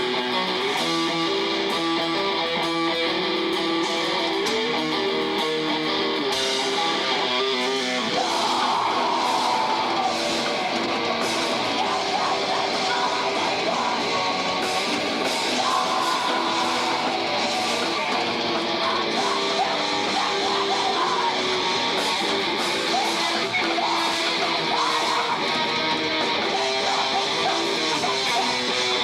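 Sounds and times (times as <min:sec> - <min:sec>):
live rock band playing: 0:00.0 - 0:29.0.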